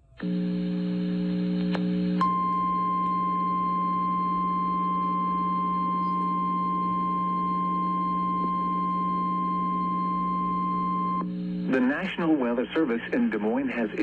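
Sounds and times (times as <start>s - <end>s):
low steady receiver hum: 0.0s - 14.0s
steady pitched alarm beep: 2.2s - 11.3s.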